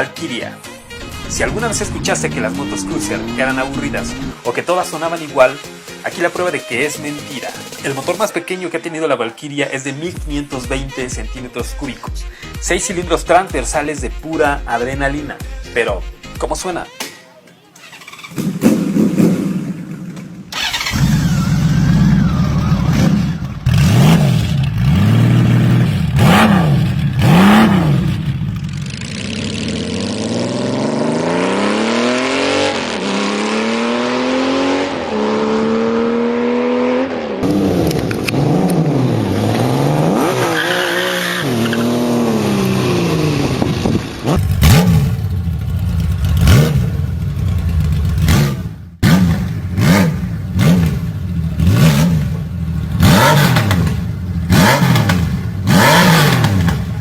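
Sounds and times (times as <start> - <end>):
motorcycle accelerating through gears: 0.6 - 4.4, 18.3 - 57.0
motorcycle engine revving: 0.6 - 4.5, 18.0 - 57.0.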